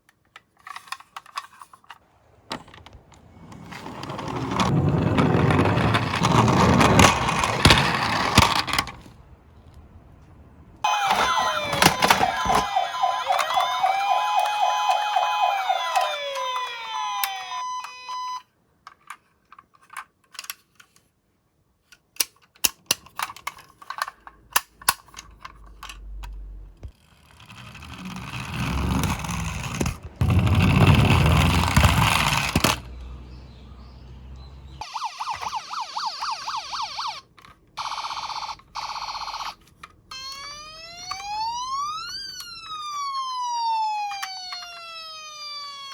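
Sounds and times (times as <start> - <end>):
loud rolling rumble: 2.4 - 10.8, 27.5 - 33.2
electronic toy siren: 10.8 - 18.5, 34.8 - 45.9.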